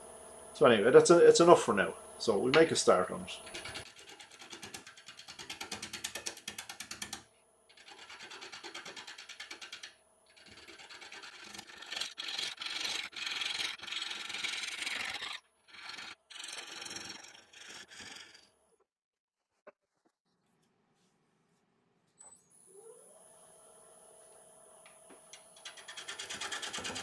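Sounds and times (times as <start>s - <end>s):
wood lathe gouge chattering: 3.4s - 18.5s.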